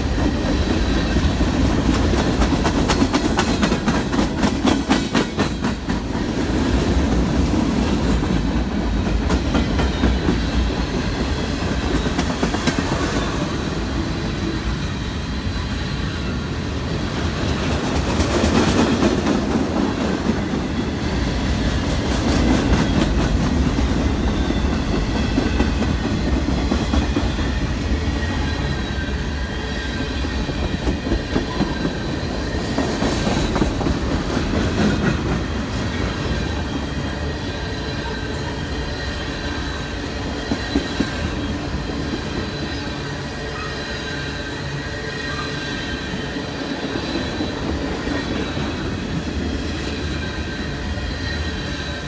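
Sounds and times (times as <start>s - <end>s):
train wheels clicking over rail joints: 0.0s - 15.0s, 17.0s - 37.4s.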